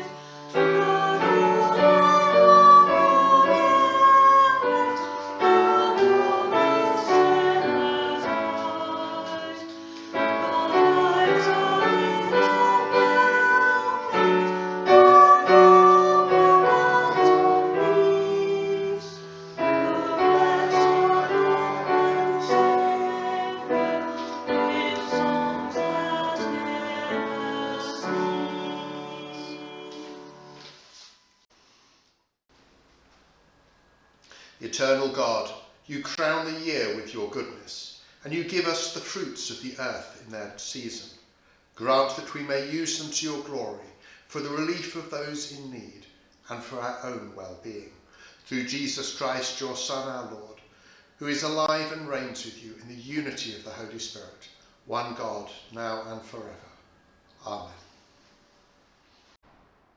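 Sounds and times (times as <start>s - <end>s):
hymn played on piano: 0.0s - 31.1s.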